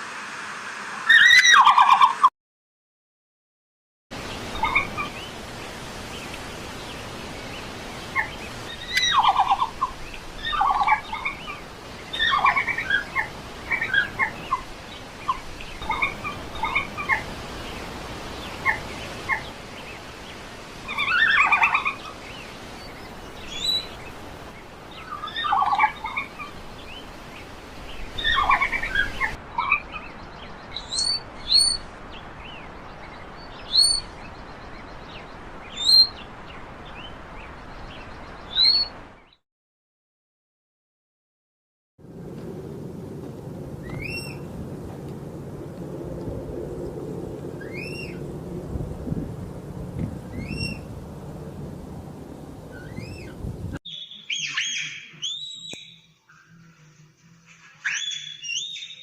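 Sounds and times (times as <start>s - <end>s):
red panda squeaky twittering: 53.9s - 56.0s, 57.8s - 59.0s.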